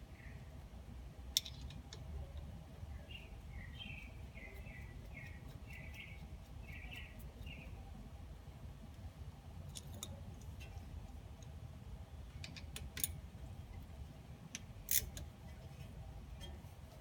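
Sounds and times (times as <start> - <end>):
metallic clicks of hand tools: 14.5 - 15.3.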